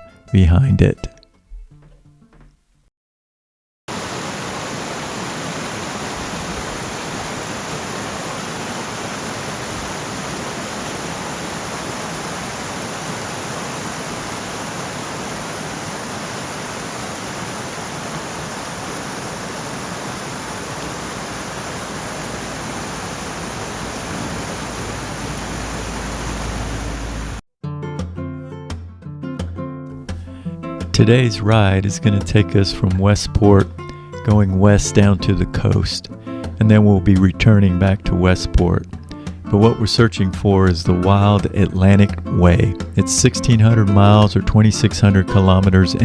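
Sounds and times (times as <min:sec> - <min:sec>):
creek water rushing: 0:03.9 - 0:27.4.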